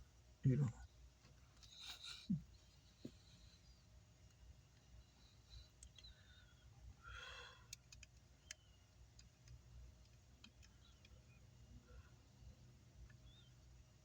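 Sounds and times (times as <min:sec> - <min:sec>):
faint sharp clicks: 0:05.7 - 0:06.1, 0:07.7 - 0:11.4.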